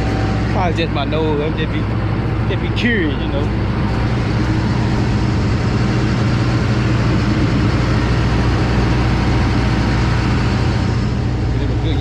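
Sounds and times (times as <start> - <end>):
combine harvester running: 0.0 - 12.0.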